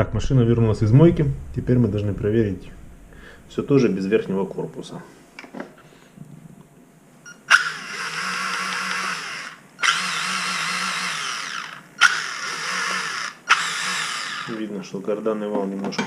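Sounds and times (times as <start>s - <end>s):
electric motor whining: 7.5s - 14.6s.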